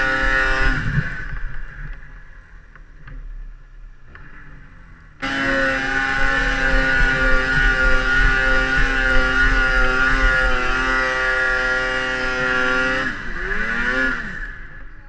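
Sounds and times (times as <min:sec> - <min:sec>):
snowmobile engine revving: 0:00.0 - 0:02.3, 0:04.1 - 0:15.0.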